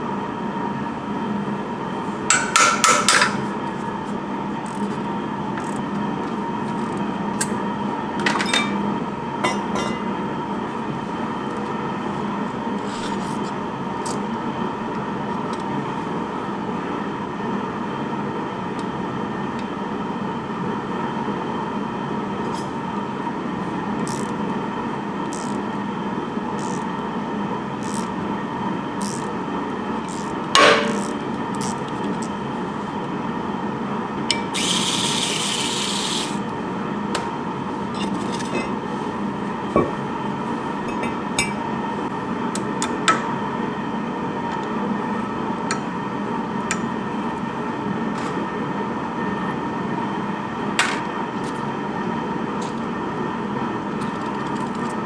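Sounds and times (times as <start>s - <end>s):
workshop hum: 0.0s - 55.0s
hand tools on metal: 2.3s - 3.6s, 9.4s - 10.2s, 26.6s - 26.9s, 29.0s - 29.3s, 30.0s - 32.3s
sharp metallic clank: 30.6s - 31.1s.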